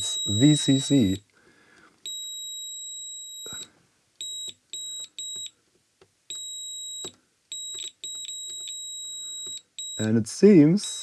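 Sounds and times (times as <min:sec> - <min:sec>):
multimeter continuity beeps: 0:00.0 - 0:01.2, 0:02.0 - 0:05.6, 0:06.3 - 0:10.1.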